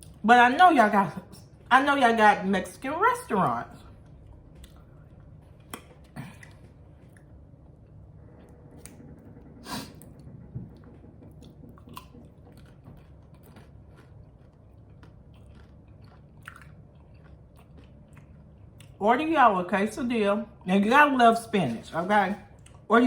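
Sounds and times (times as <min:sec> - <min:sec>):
person chewing food: 0:03.9 - 0:08.0, 0:11.4 - 0:19.0.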